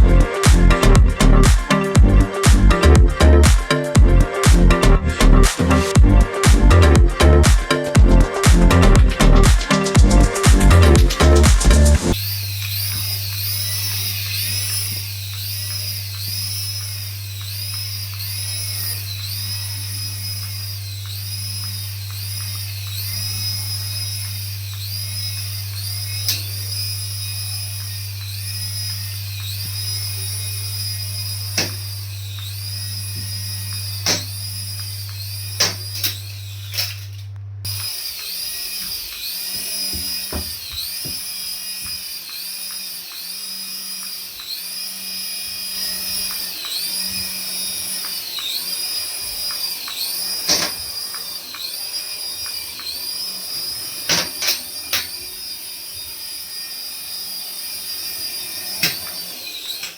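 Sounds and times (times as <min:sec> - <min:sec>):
low hum: 0:00.0 - 0:40.6.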